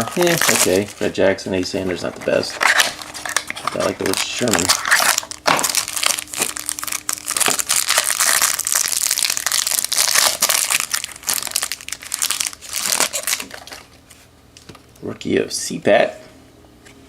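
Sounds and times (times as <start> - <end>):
plastic wrapper crinkling: 0.0 - 1.2, 1.9 - 14.1.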